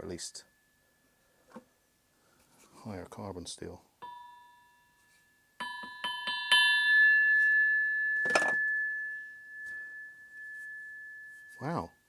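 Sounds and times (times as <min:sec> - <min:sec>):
steel part tapped ringing like a bell: 0:04.0 - 0:05.0, 0:05.6 - 0:11.7.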